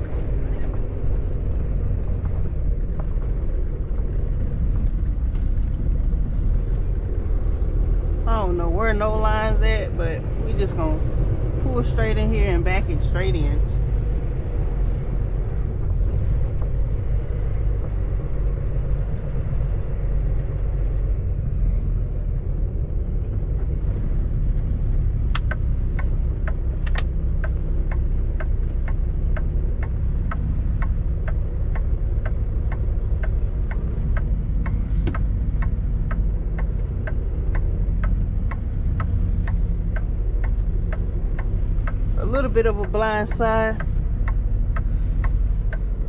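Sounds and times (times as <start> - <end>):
truck diesel engine running: 0.0 - 46.0
regular clicking: 24.5 - 46.0.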